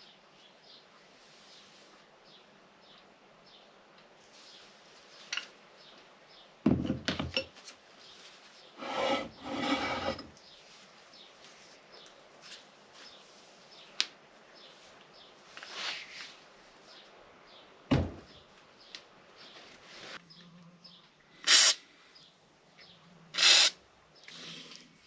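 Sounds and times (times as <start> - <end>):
metal scraping rub: 8.8 - 10.3.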